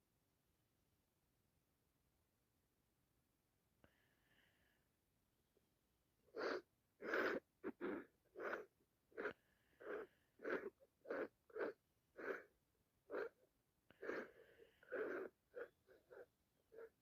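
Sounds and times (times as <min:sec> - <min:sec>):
person sniffing through congested nose: 0:06.3 - 0:12.5, 0:13.1 - 0:17.0.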